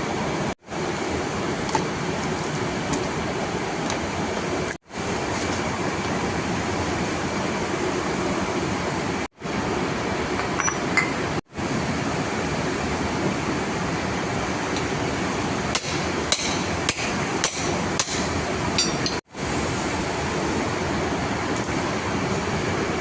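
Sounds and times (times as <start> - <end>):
hammer tapping metal: 15.8 - 19.2.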